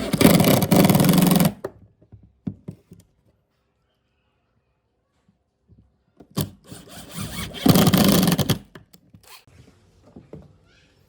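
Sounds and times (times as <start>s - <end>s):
hand tool scraping wood: 6.7s - 8.6s.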